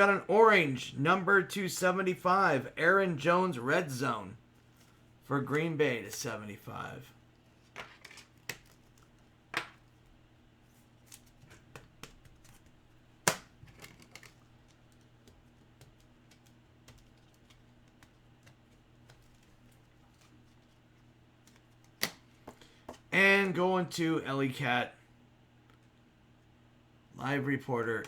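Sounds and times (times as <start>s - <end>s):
low steady hum: 0.0s - 28.0s
cards rustling: 10.7s - 23.1s.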